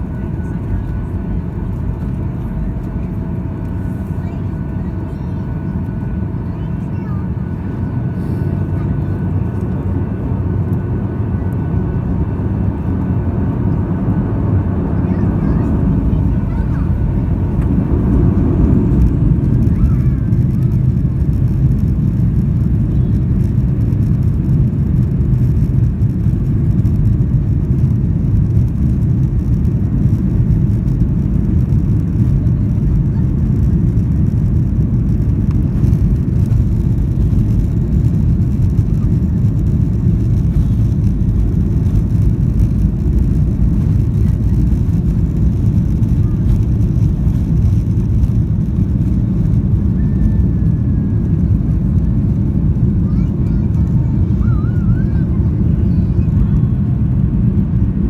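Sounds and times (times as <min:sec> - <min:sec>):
airliner engine rumble in cabin: 0:00.0 - 0:58.0.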